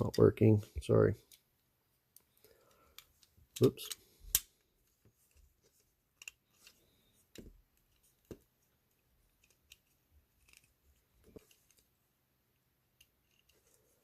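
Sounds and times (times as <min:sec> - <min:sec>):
small model parts clicking: 0:13.0 - 0:13.6.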